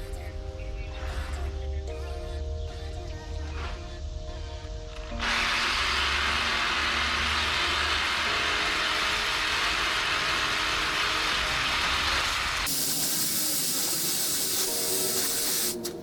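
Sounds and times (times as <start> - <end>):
angle grinder cutting steel: 5.2 - 16.0.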